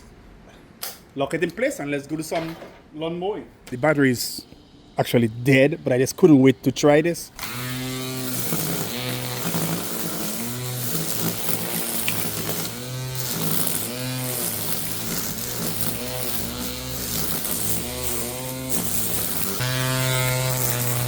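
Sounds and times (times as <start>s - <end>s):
string trimmer motor whine: 7.4s - 21.0s.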